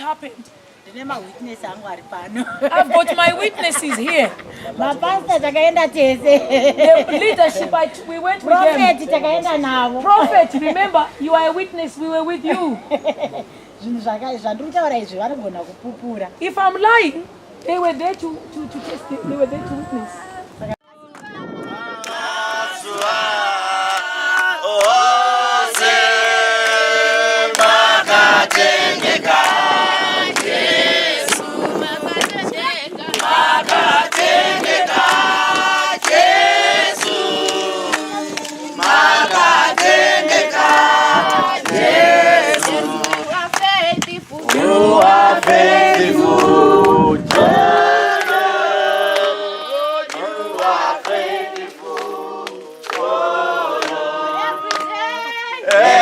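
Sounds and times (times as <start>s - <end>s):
group singing a praise song: 18.6s - 56.0s.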